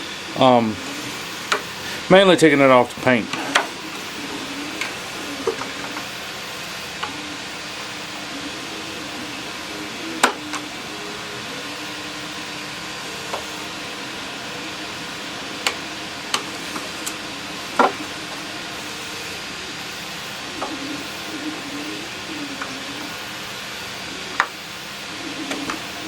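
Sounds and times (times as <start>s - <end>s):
steady hiss: 0.0s - 26.0s.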